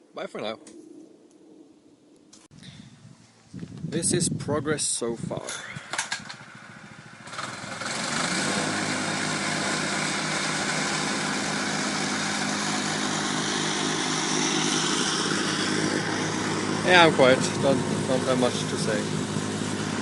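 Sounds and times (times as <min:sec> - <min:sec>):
small engine starting and running: 0:05.5 - 0:20.0.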